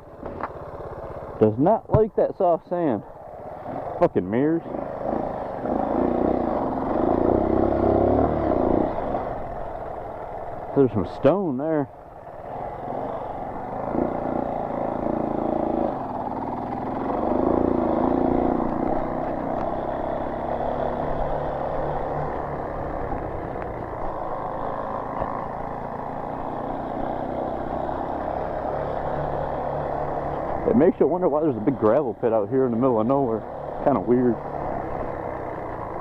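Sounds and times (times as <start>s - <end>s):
motorcycle engine running: 0.0s - 36.0s.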